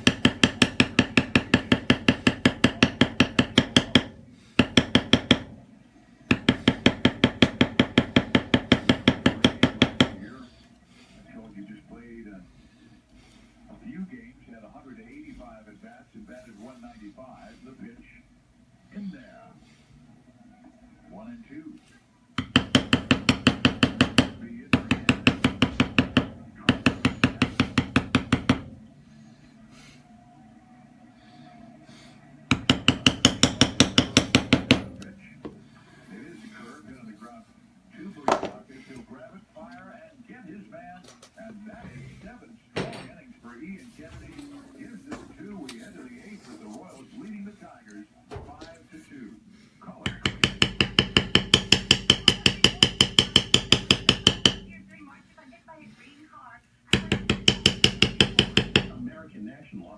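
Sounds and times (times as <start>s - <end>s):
mallet striking metal stamping tool: 22.4s - 28.7s, 32.5s - 35.0s, 50.1s - 54.7s, 57.0s - 59.0s
mallet tapping leather stamp: 50.1s - 54.7s, 57.0s - 59.0s.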